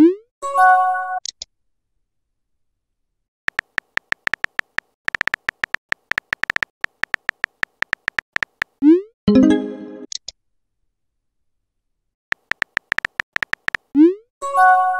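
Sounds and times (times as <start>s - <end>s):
phone keyboard typing clicks: 3.5s - 8.8s, 12.3s - 13.9s
notification tone: 9.3s - 10.1s.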